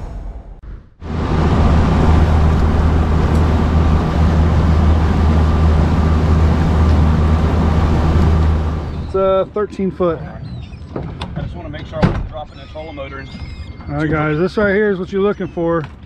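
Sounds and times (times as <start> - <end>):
wind and water rushing: 1.0 - 9.3
boat engine humming: 1.0 - 10.8.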